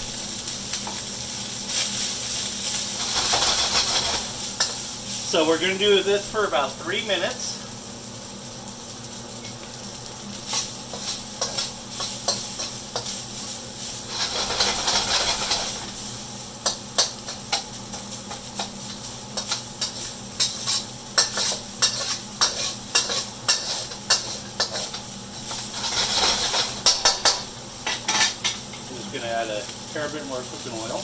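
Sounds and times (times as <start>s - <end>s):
rice sizzling in a wok: 0.0s - 31.0s
utensil scraping a wok: 1.6s - 5.4s, 10.4s - 28.8s.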